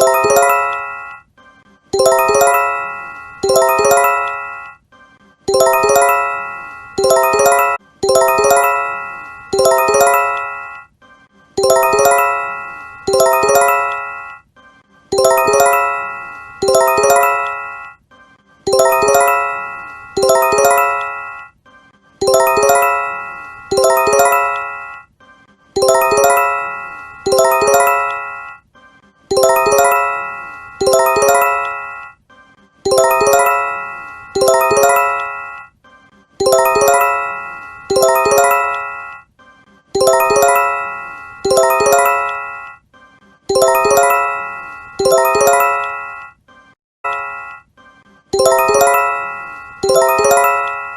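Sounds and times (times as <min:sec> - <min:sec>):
bell-like alert chime: 0:00.0 - 0:01.2, 0:02.0 - 0:04.8, 0:05.5 - 0:10.8, 0:11.6 - 0:14.4, 0:15.2 - 0:18.0, 0:18.7 - 0:21.5, 0:22.2 - 0:25.0, 0:25.8 - 0:28.6, 0:29.3 - 0:32.2, 0:32.9 - 0:35.7, 0:36.4 - 0:39.2, 0:40.0 - 0:42.8, 0:43.5 - 0:46.4, 0:48.4 - 0:50.9.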